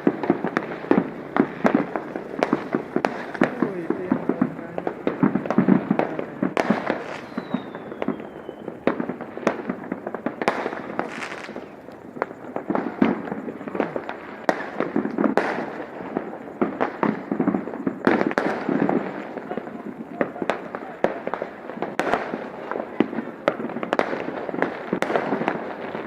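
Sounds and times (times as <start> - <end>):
falling firework whistle: 0.0 - 26.0
firework crackling: 0.0 - 26.0
fireworks popping and banging: 0.0 - 26.0.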